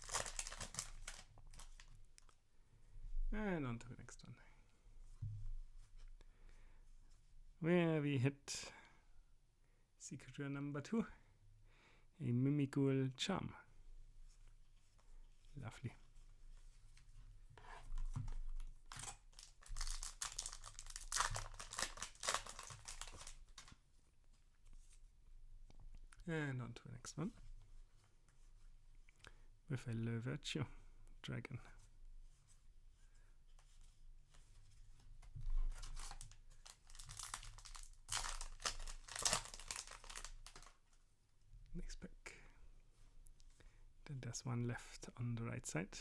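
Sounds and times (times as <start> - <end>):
foil wrapper crinkling and tearing: 0.0 - 2.0, 18.9 - 23.7, 35.8 - 40.8.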